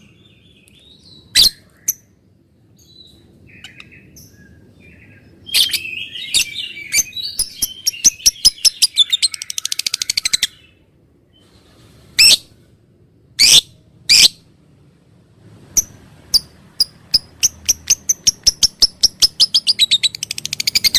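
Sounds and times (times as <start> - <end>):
lovebird chirping trill: 2.8 - 10.8, 15.8 - 20.9.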